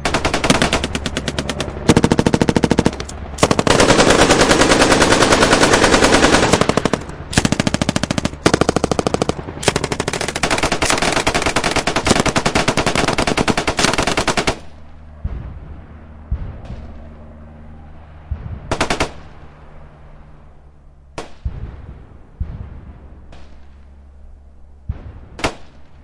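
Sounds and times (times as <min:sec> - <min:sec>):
machine-gun bursts: 0:00.0 - 0:14.8.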